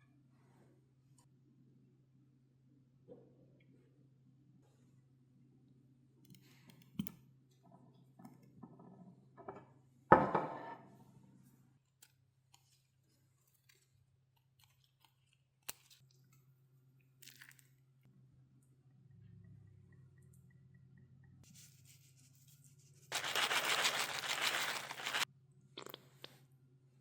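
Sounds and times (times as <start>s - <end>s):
small clicks and rustles: 23.1s - 25.3s.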